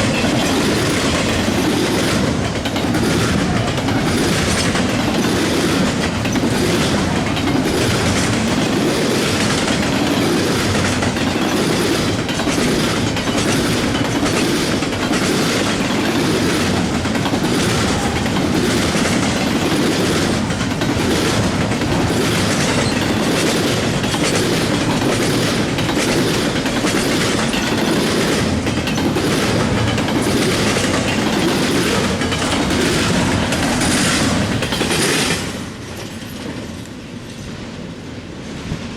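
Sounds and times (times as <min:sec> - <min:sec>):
train rumble: 0:00.0 - 0:38.9
train wheels clickety-clack: 0:00.0 - 0:38.9.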